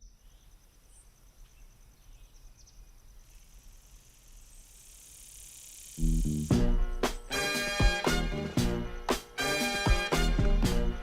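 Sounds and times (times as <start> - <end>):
insect trilling: 0.0 - 6.6.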